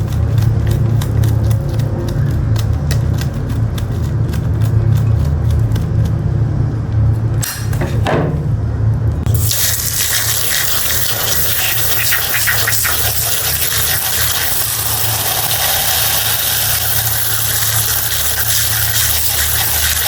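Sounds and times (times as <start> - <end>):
even hiss: 9.3 - 20.0
small motor humming: 9.3 - 20.0.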